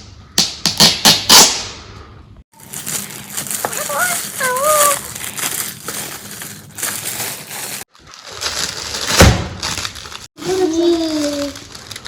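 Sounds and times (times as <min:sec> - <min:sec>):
wrapping paper tearing and crumpling: 0:02.6 - 0:12.0.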